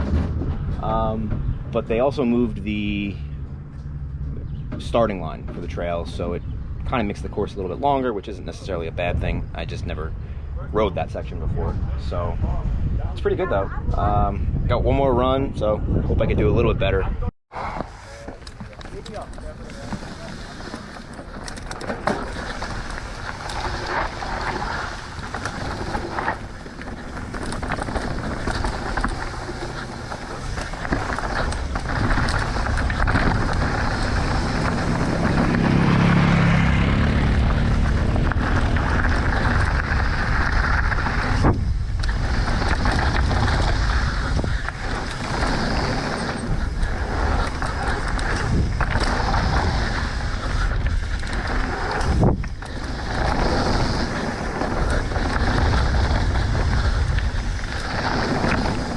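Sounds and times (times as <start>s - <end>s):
tyres rumbling on dirt: 0.0s - 12.3s, 17.5s - 58.9s
wind rushing over microphone: 0.0s - 58.9s
bike knocking and clattering: 17.9s - 58.9s.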